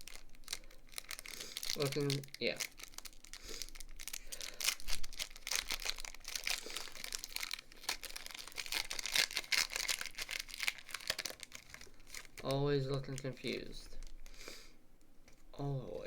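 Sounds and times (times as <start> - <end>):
foil wrapper crinkling: 0.0 - 14.4.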